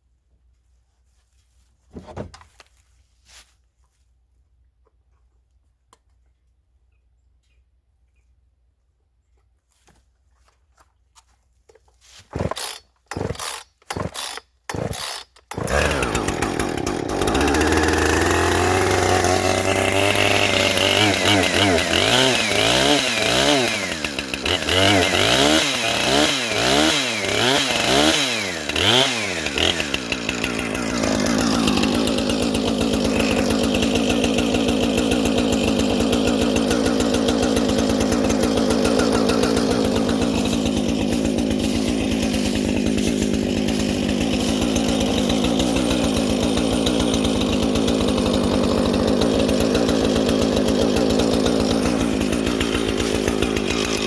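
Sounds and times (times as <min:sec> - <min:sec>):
chainsaw cutting wood: 0:12.2 - 0:54.0.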